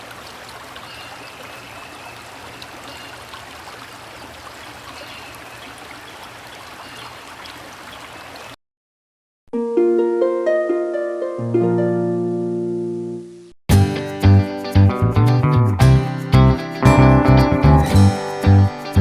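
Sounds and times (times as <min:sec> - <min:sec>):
flowing water rushing: 0:00.0 - 0:08.6.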